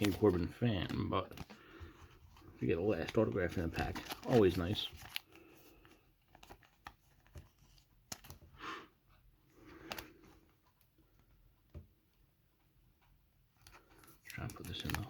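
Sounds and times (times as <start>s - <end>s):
cards rustling: 0.0s - 8.7s, 9.5s - 11.4s, 13.5s - 15.0s.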